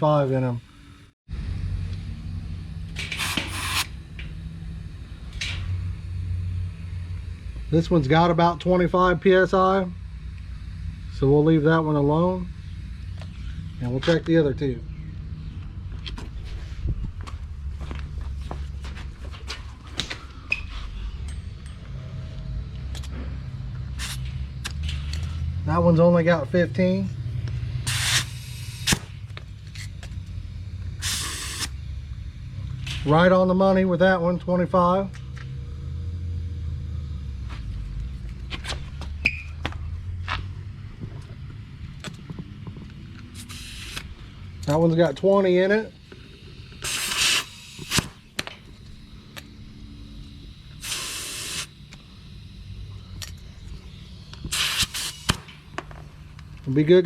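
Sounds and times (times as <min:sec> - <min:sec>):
steady low hum: 0:00.0 - 0:57.0
air hissing at tire valve: 0:03.0 - 0:04.0, 0:23.8 - 0:25.6, 0:26.5 - 0:33.4, 0:43.2 - 0:44.8, 0:46.0 - 0:56.5.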